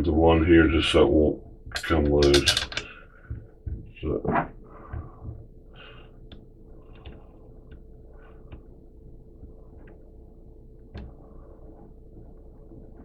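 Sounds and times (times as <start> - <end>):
faint steady hum: 0.0 - 13.0
metal parts clicking: 1.8 - 3.0.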